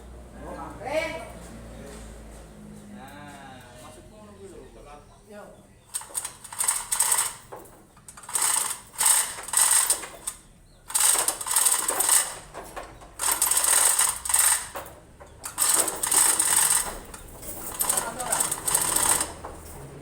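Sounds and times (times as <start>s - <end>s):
metal ratchet clicking: 5.9s - 12.5s, 13.2s - 14.8s, 15.4s - 19.8s.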